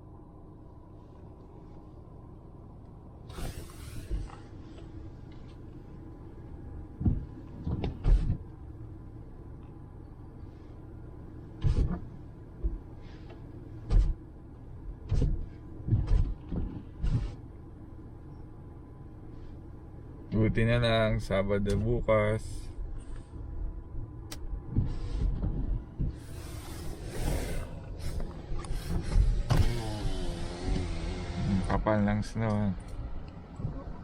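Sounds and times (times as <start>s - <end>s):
car cabin rumble: 0.0s - 34.0s
brief hiss: 3.3s - 4.4s
dull thumps and knocks: 7.0s - 8.4s.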